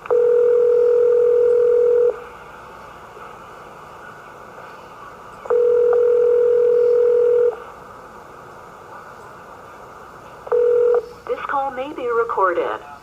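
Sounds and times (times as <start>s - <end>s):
telephone ringback tone: 0.1s - 2.2s, 5.5s - 7.6s, 10.5s - 11.2s.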